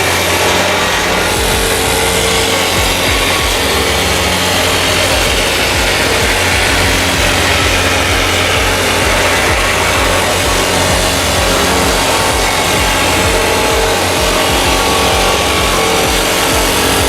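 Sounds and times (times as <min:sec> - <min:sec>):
power tool running: 0:00.0 - 0:17.0.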